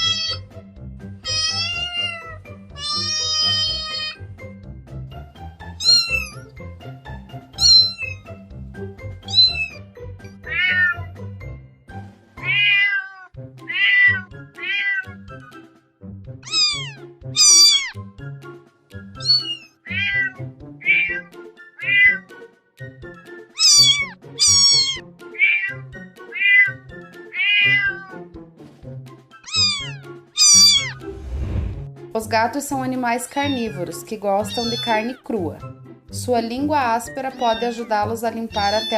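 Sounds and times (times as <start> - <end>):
cat meowing: 0.0 - 0.4, 1.2 - 4.3, 5.8 - 6.5, 7.6 - 8.3, 9.2 - 9.8, 10.4 - 11.1, 12.4 - 15.2, 16.4 - 18.0, 19.2 - 22.3, 23.6 - 28.3, 29.4 - 31.0, 33.4 - 35.2, 38.5 - 38.9
background music: 0.0 - 38.9.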